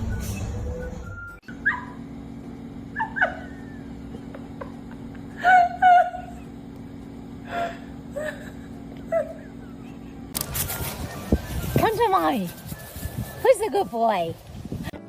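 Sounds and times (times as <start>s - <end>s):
steady low hum: 0.0s - 15.0s
dog yipping and whining: 0.2s - 2.0s.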